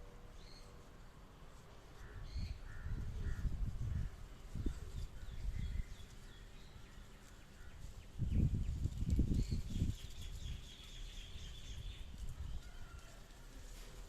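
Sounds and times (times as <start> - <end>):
small birds chirping: 1.9 - 12.8
wind buffeting microphone: 2.1 - 12.8.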